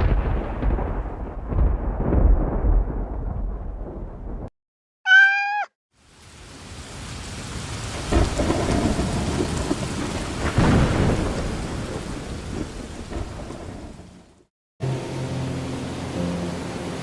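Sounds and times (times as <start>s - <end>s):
rolling thunder: 0.0s - 4.5s, 7.9s - 14.5s
cat meowing: 5.1s - 5.7s
heavy rain: 5.9s - 17.0s.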